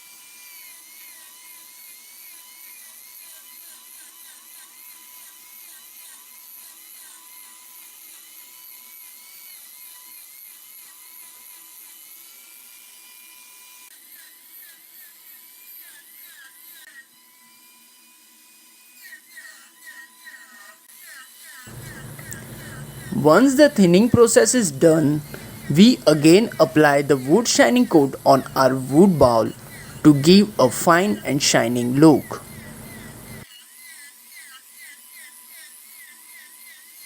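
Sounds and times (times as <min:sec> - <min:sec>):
hand tool scraping spinning wood: 0:21.7 - 0:33.4
wood lathe whining: 0:21.7 - 0:33.4.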